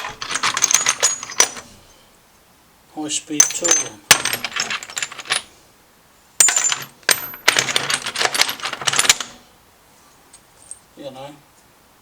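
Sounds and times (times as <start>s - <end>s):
metal tool bits clinking in a box: 0.0s - 1.7s, 3.4s - 5.5s, 6.4s - 9.4s.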